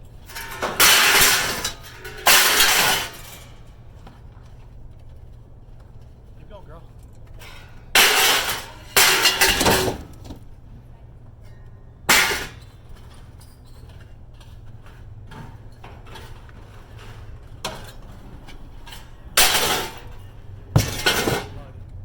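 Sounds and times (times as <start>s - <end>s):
steady low hum: 0.0s - 22.0s
scrap metal clattering crashes: 0.2s - 3.7s, 7.4s - 10.4s, 12.1s - 14.0s, 14.6s - 22.0s.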